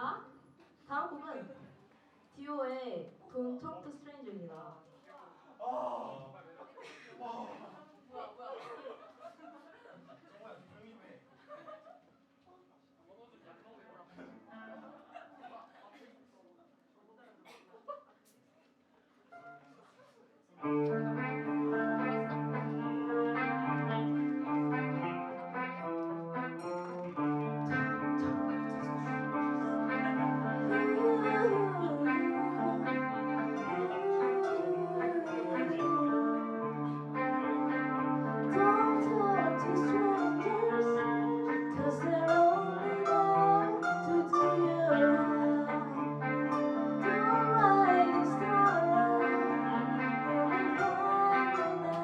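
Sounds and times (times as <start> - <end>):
live band playing: 20.6 - 52.0
woman singing: 29.5 - 37.0, 38.3 - 52.0.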